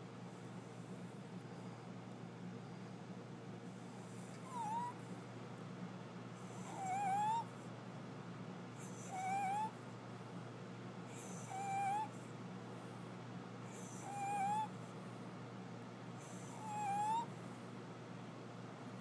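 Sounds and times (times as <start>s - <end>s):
small dog snoring with whistle: 3.9s - 5.0s, 6.4s - 7.5s, 8.8s - 9.8s, 11.1s - 12.2s, 13.7s - 14.7s, 16.2s - 17.3s.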